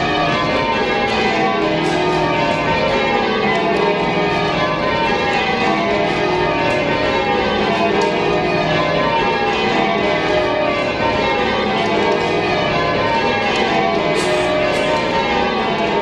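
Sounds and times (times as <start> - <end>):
church bells ringing: 0.0 - 16.0.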